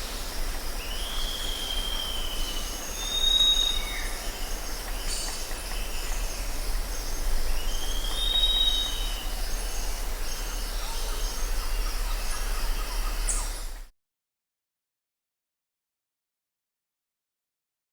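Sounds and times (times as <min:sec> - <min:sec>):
bird calls: 0:00.0 - 0:13.9
high-pitched insect chorus: 0:00.0 - 0:13.9
whistled bird call: 0:00.9 - 0:06.3, 0:07.6 - 0:13.8.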